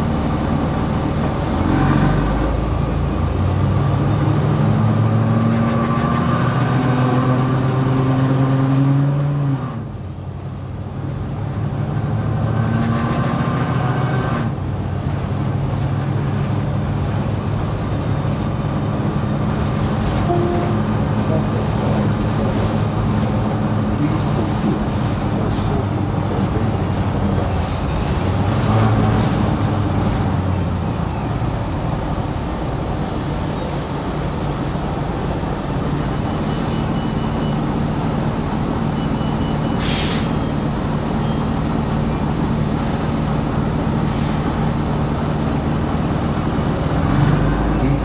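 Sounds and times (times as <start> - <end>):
bus engine drone: 0.0 - 48.0
road noise: 0.0 - 48.0
air brake hiss: 32.9 - 35.2, 36.4 - 36.9, 39.8 - 40.4, 44.1 - 44.4.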